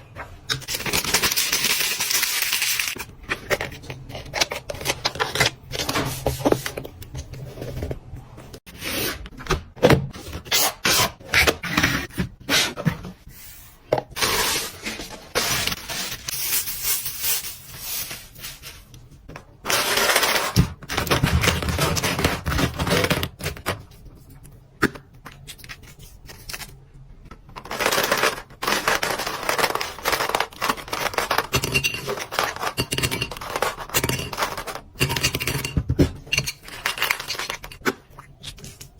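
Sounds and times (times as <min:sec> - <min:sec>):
packaging scraping and tearing: 0:00.6 - 0:06.8, 0:19.6 - 0:23.7, 0:27.6 - 0:34.9.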